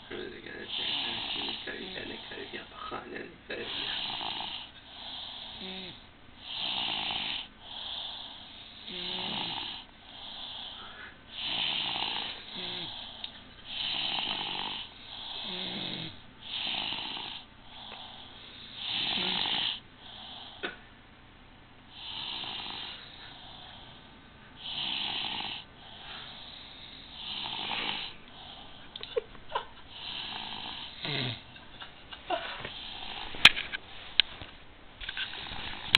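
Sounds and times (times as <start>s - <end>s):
people snoring: 0.1s - 2.7s, 3.5s - 20.7s, 22.0s - 23.9s, 24.6s - 28.7s, 29.9s - 31.5s.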